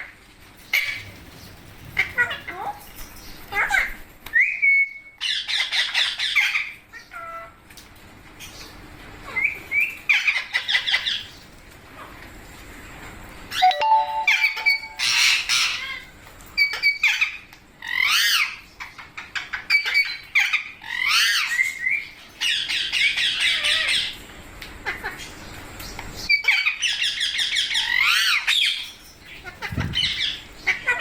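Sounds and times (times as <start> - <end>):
parakeet squawking: 29.5 - 31.0.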